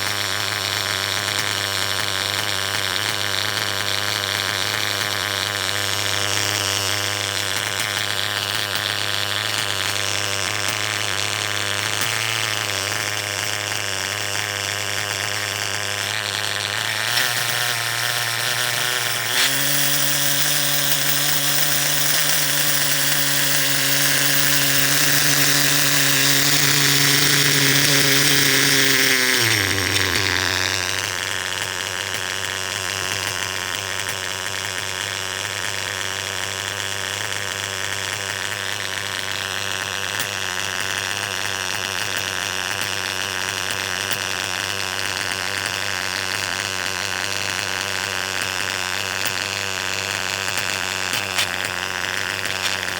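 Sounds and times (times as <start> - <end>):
engine idling and revving: 11.4 - 34.2.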